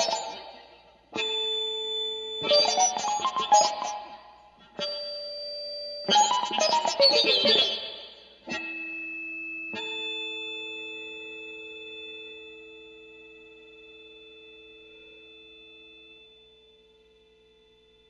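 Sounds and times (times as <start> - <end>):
plucked guitar: 0.0 - 1.7, 2.4 - 5.1, 6.1 - 8.8.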